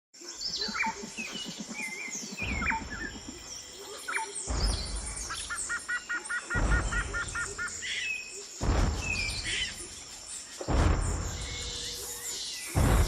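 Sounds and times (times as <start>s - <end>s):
birds chirping: 0.2s - 13.0s
deep rumbles: 8.6s - 13.0s
low pulsing rattle: 8.6s - 13.0s.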